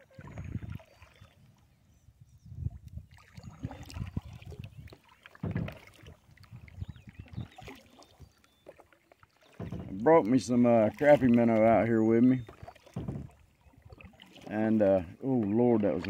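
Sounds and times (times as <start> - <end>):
paddle strokes in water: 0.0 - 1.8, 2.7 - 16.0.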